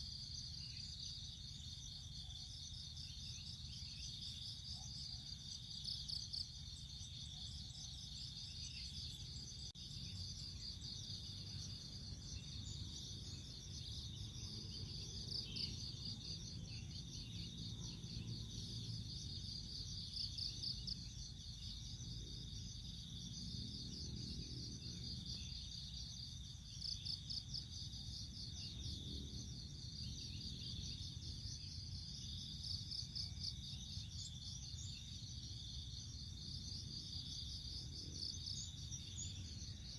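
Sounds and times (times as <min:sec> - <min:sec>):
insects trilling in pulsed chirps: 0:00.0 - 0:39.9.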